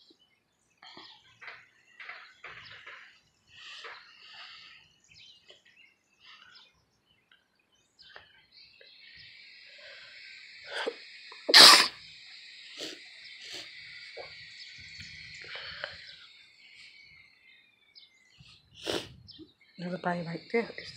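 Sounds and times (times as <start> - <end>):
loud human sneeze: 10.8 - 12.0.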